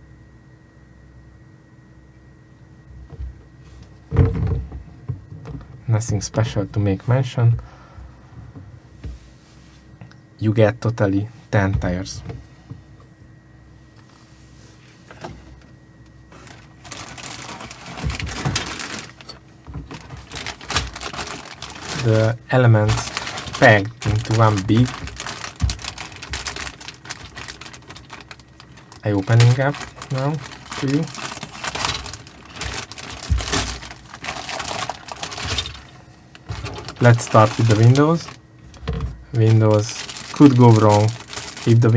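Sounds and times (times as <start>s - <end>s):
plastic packaging rustling and crinkling: 3.1s - 6.6s, 14.6s - 41.9s
dull bump: 4.1s - 5.8s, 16.3s - 22.0s, 22.8s - 37.7s
plastic parts clicking: 16.4s - 41.8s.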